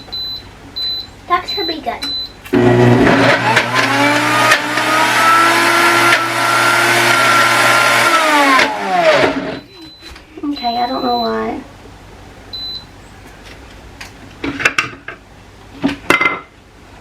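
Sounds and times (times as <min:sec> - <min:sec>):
blender motor whining: 0:02.5 - 0:09.6.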